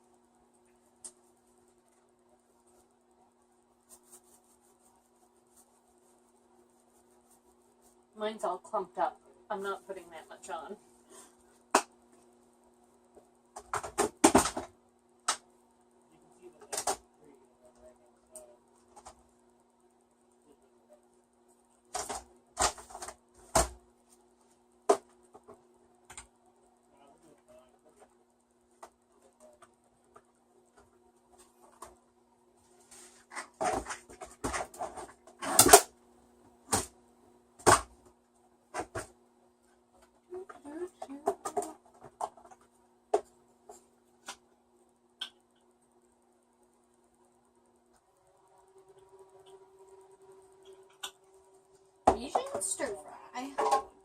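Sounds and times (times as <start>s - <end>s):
faint appliance hum: 0.0s - 54.0s
kitchen containers knocking and rattling: 33.3s - 35.8s, 53.5s - 54.0s.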